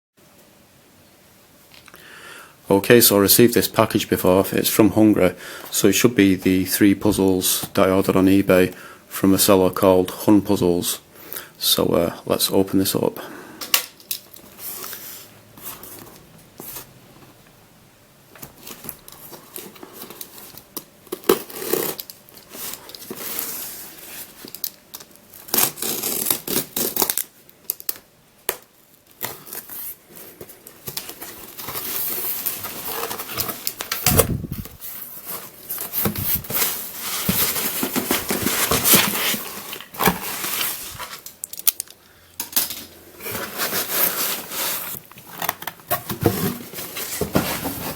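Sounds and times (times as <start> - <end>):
packaging tearing and crinkling: 18.6 - 30.0.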